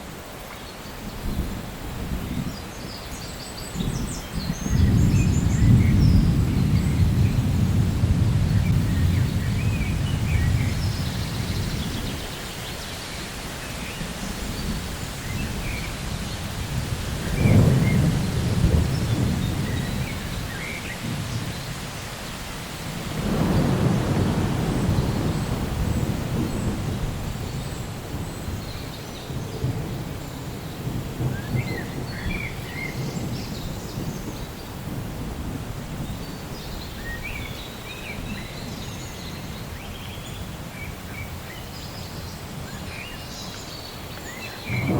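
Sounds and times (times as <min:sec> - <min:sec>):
steady rain: 0:00.0 - 0:44.9
thunder rumbling: 0:03.8 - 0:37.1, 0:44.6 - 0:44.9.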